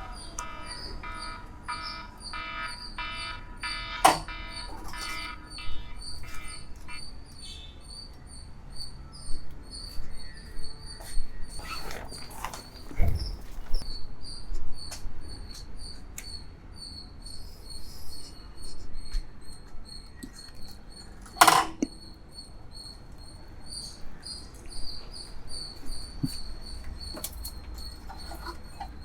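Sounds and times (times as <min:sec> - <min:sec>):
cricket chirping: 0:00.0 - 0:29.0.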